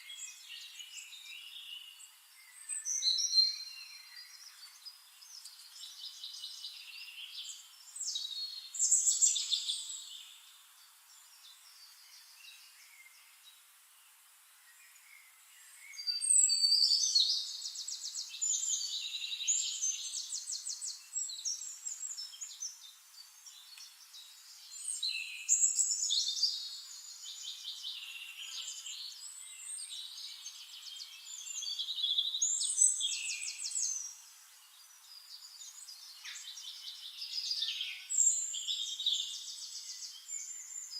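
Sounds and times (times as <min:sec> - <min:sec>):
soft bird chirps: 0:00.0 - 0:40.9.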